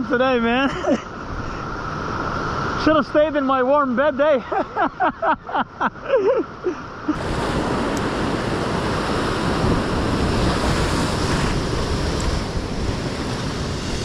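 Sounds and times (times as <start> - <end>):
surf breaking on rocky shore: 7.0 - 14.0
wind buffeting microphone: 7.1 - 14.0.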